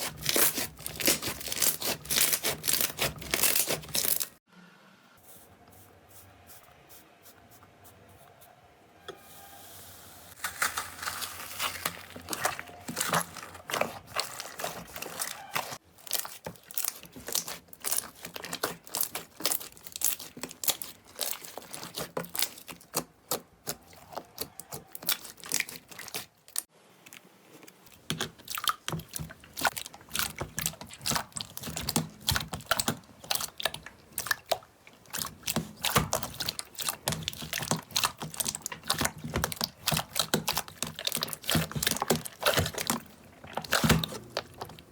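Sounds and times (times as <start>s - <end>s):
slime squeezed crackling and popping: 10.4s - 26.6s.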